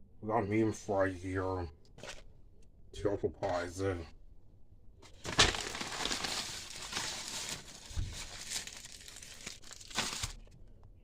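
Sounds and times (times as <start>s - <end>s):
paper packaging crinkling: 5.1s - 10.6s.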